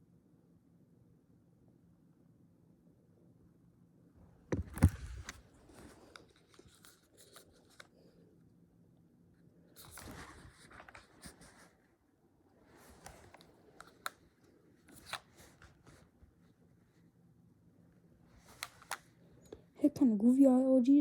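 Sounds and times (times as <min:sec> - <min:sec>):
light clicks and scrapes of phone parts: 0:04.6 - 0:08.1, 0:09.7 - 0:11.8, 0:12.7 - 0:16.0, 0:18.4 - 0:19.7.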